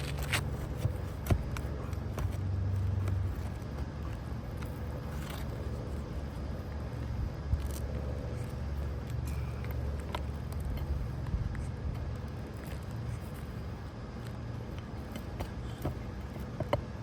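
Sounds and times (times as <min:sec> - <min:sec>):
pry bar clicking and scraping: 0:00.0 - 0:02.4
steady low rumble: 0:00.0 - 0:17.0.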